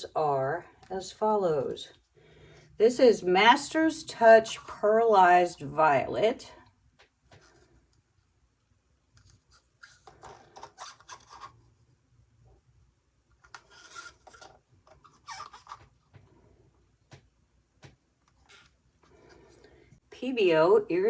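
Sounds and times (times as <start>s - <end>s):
faint rubbing and scraping: 9.2s - 12.0s, 13.4s - 16.8s.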